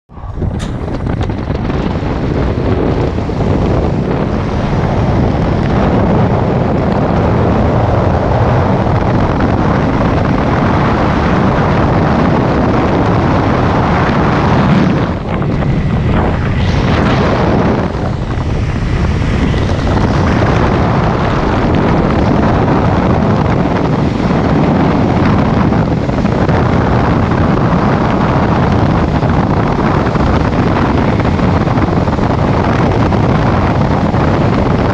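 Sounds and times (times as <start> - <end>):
wind buffeting microphone: 0.1 - 34.9.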